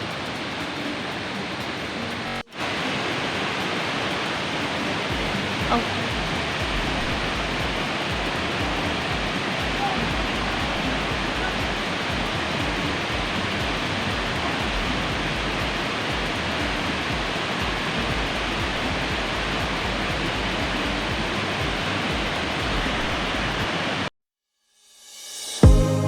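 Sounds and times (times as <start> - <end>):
waterfall rushing: 0.0 - 24.1.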